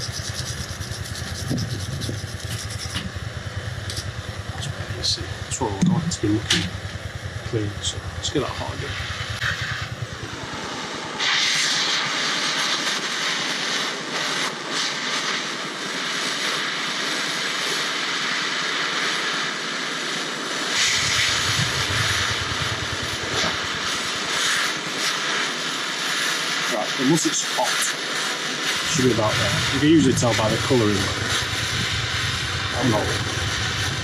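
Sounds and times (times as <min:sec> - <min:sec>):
wind rumbling on microphone: 0:00.0 - 0:10.7, 0:20.8 - 0:24.1, 0:28.8 - 0:34.0
gas torch hissing roar: 0:00.0 - 0:34.0.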